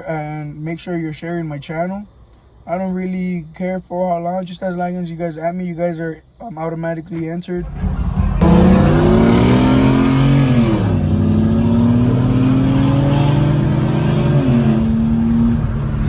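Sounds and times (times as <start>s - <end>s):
car engine accelerating: 7.6s - 16.0s.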